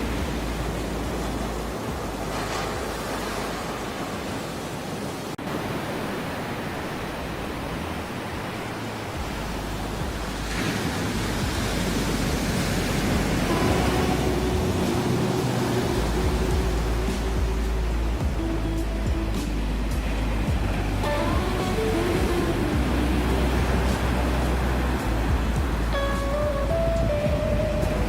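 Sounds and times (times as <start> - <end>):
ocean surf breaking waves: 0.0 - 28.0
faint held musical notes: 9.2 - 28.0.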